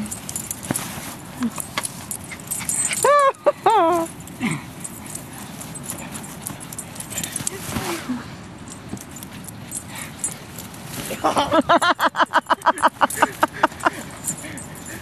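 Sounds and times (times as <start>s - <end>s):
rustling: 0.0s - 3.2s, 3.8s - 11.4s.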